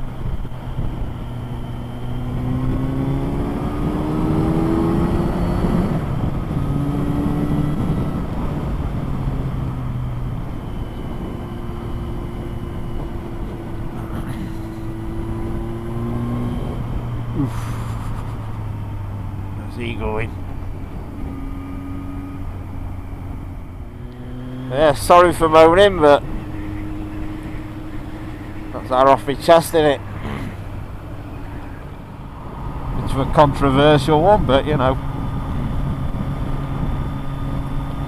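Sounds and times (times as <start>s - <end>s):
motorcycle engine accelerating: 0.0s - 38.0s
riding noise rush: 17.3s - 21.1s, 23.5s - 35.3s.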